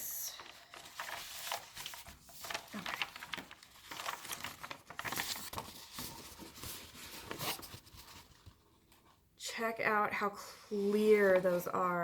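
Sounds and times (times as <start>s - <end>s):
canvas rustling and crinkling: 0.4s - 8.4s.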